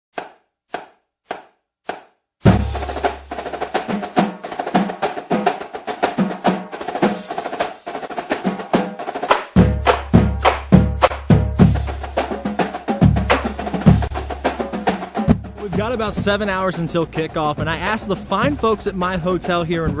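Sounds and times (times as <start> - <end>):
drum beat: 1.9 - 20.0
deep bass: 15.3 - 20.0.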